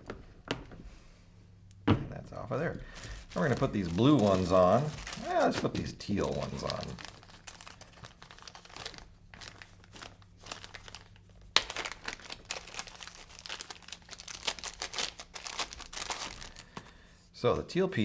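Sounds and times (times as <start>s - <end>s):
plastic crinkling and rustling: 2.9s - 17.0s.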